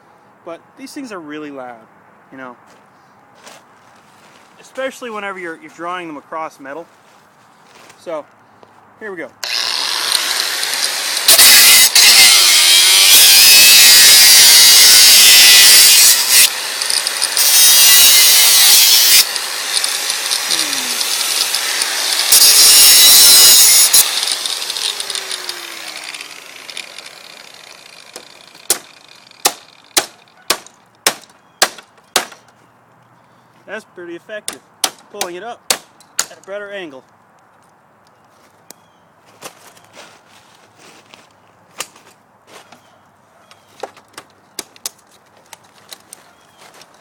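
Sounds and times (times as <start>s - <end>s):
rotary tool grinding metal: 9.4s - 30.4s.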